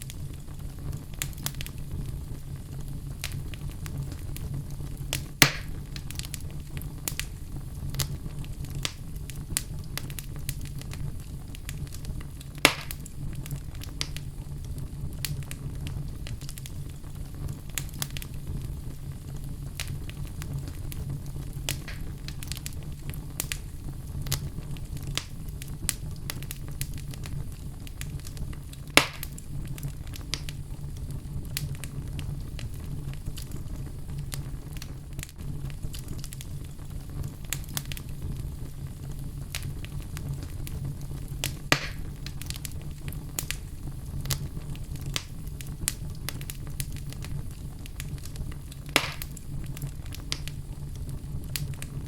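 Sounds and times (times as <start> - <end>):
fire crackling: 0.0 - 52.0
fire popping loudly: 0.0 - 52.0.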